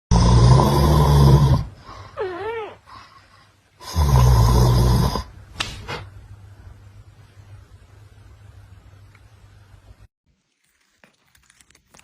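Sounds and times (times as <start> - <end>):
person snoring loudly: 0.1 - 1.8, 3.8 - 5.3.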